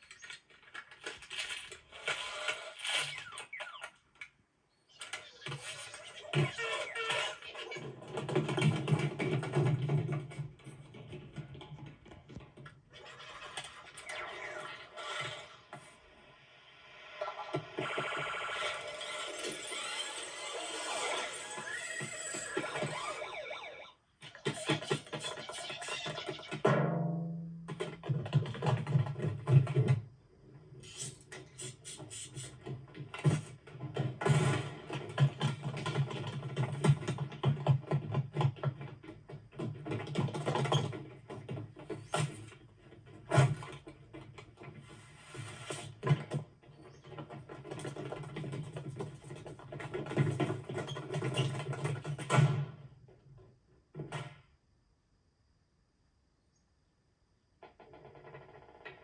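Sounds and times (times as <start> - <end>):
scratch-like clicks: 0.0 - 4.3.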